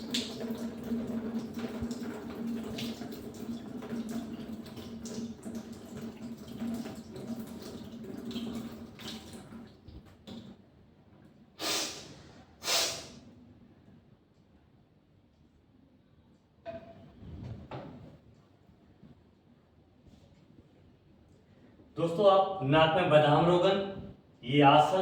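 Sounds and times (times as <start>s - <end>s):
water splashing into a basin: 0.0s - 10.5s
air blown out through nose: 11.6s - 13.2s.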